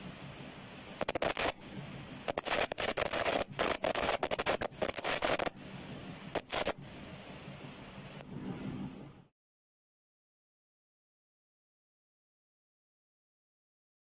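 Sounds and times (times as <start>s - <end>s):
rapid crackling chatter: 1.0s - 1.6s, 2.2s - 5.6s, 6.3s - 6.9s
tape rewinding whine: 1.0s - 1.6s, 2.2s - 5.6s.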